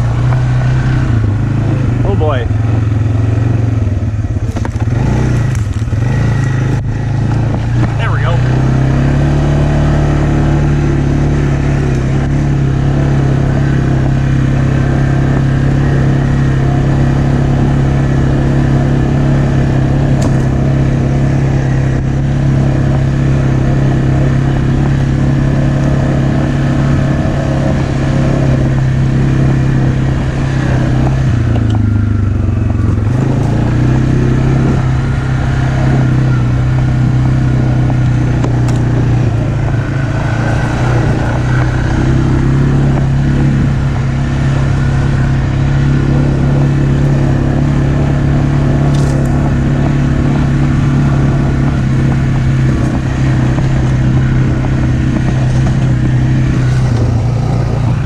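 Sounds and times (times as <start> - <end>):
atv engine idling: 31.3 - 35.6.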